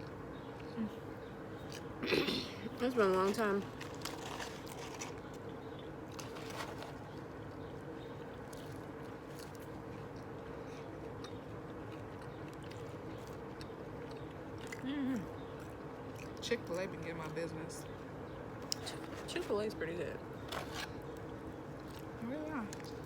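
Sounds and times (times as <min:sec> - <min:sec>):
person chewing: 0:00.0 - 0:02.4, 0:03.7 - 0:16.4, 0:20.7 - 0:23.0
steady background hum: 0:00.0 - 0:23.0.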